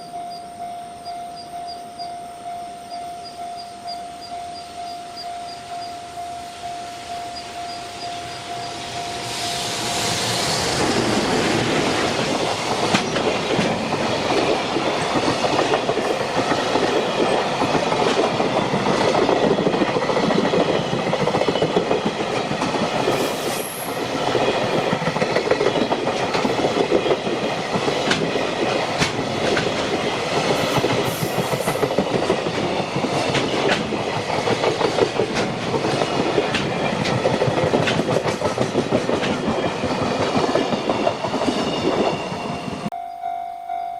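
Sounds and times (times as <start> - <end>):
freight train rumbling: 4.5 - 43.0
wheels clacking over rail joints: 10.7 - 42.9.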